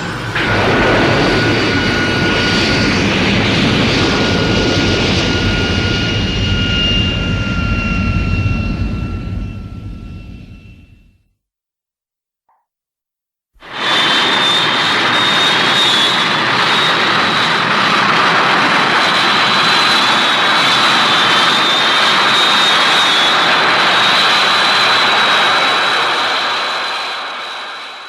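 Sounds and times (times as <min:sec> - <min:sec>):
jet-like rush: 0:00.0 - 0:09.5, 0:13.6 - 0:28.0
thin high whine: 0:04.2 - 0:11.2.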